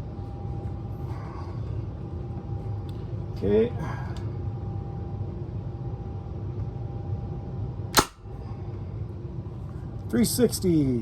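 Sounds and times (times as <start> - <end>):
steady low hum: 0.0 - 11.0
air launcher shot crack: 8.0 - 8.2.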